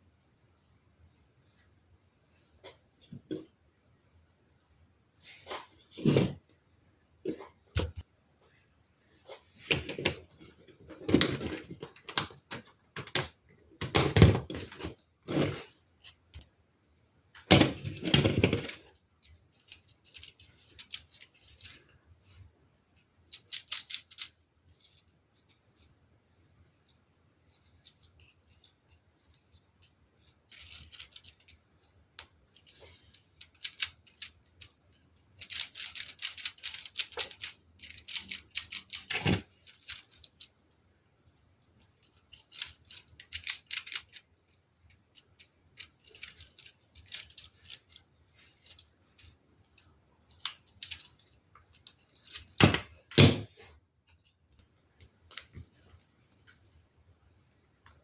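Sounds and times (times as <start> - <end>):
plastic pieces clicking and rattling: 17.5 - 21.9, 23.3 - 40.6, 41.8 - 53.0.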